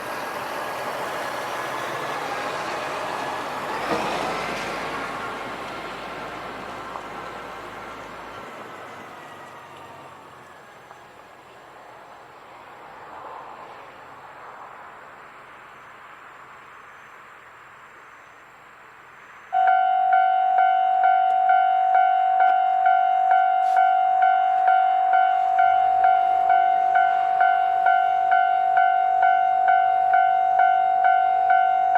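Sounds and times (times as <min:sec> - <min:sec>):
vehicle running noise: 0:00.0 - 0:31.9
level crossing warning bell clanging: 0:19.6 - 0:31.9.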